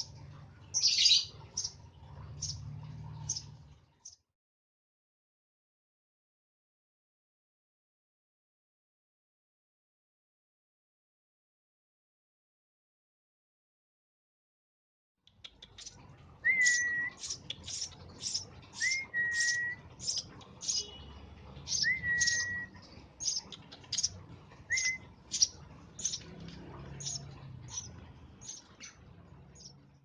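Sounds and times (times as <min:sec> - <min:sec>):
sparrow chirping: 0:00.0 - 0:04.2, 0:15.3 - 0:30.0.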